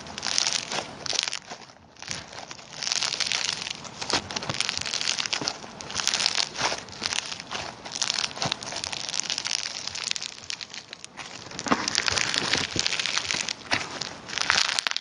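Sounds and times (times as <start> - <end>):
slime squished by hand crackling: 0.0 - 15.0.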